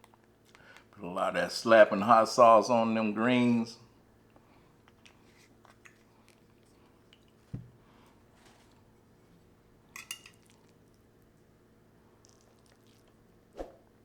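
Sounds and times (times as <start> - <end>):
utensils clinking on plate: 10.0 - 10.5.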